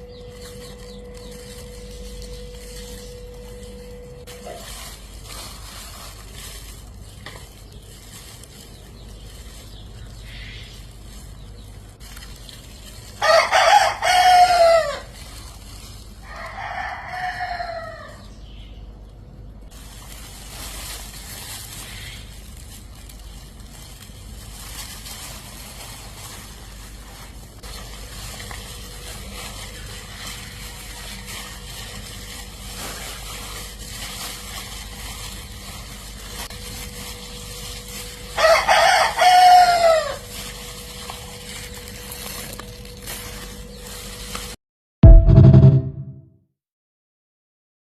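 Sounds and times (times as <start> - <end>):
rooster crowing: 13.2 - 15.1, 16.2 - 18.2, 38.3 - 40.3.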